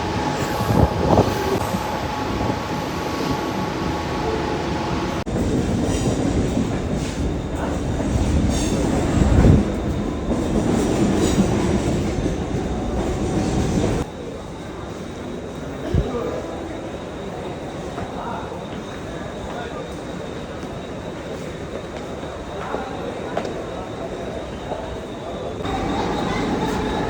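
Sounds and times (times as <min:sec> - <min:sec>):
train wheels rumbling on track: 0:00.0 - 0:27.0
train clattering: 0:04.4 - 0:14.1, 0:25.6 - 0:27.0
high wheel squealing: 0:23.6 - 0:27.0.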